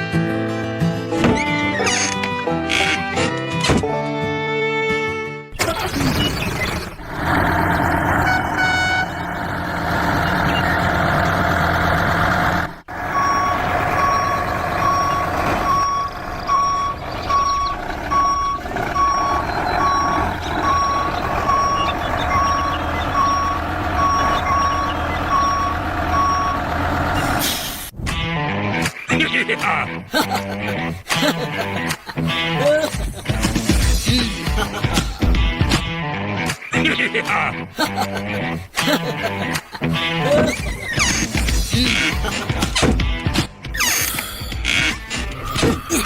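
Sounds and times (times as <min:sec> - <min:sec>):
heavy vehicle engine running: 0:06.3 - 0:27.9
reversing alarm beeping: 0:12.9 - 0:27.5.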